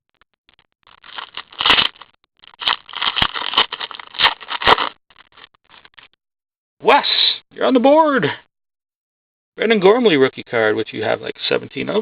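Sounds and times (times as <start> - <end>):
cards and wrappers rustling: 0.9 - 6.1.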